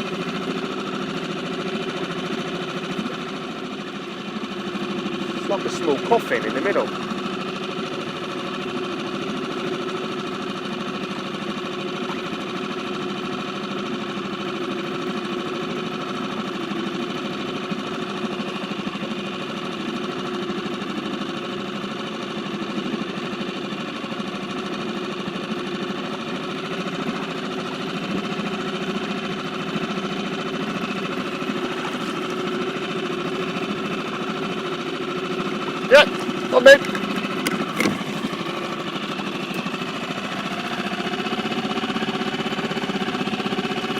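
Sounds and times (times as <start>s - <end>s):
outboard motor droning: 0.0s - 43.9s.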